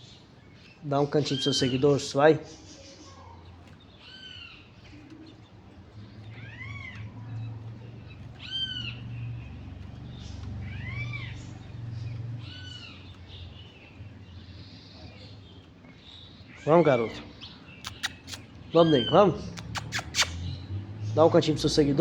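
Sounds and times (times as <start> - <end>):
arched animal calls: 6.0 - 9.6, 10.2 - 13.7, 16.4 - 20.7.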